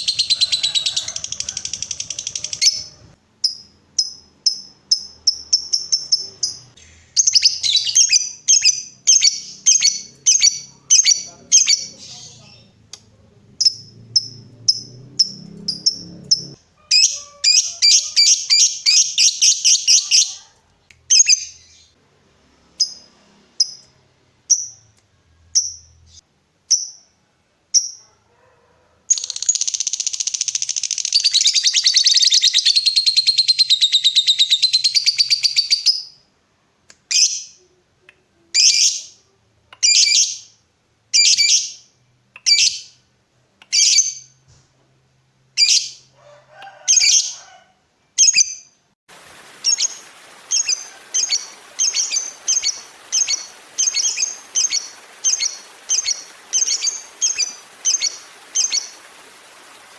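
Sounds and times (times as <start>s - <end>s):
lovebird chirping and trilling: 0.0s - 12.8s, 13.6s - 20.4s, 49.6s - 59.9s.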